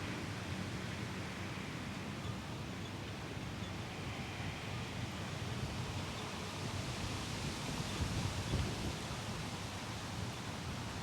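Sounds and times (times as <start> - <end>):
strong wind on microphone: 7.4 - 9.5.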